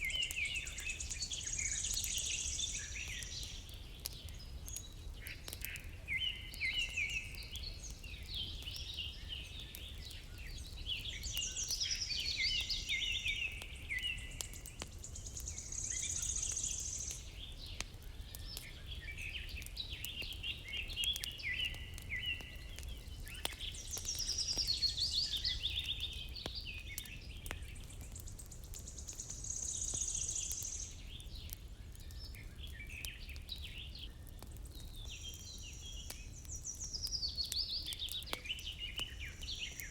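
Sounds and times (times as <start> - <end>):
songbirds singing: 0.0 - 39.9
faint clicks: 3.1 - 5.9, 13.6 - 15.6, 19.6 - 24.8.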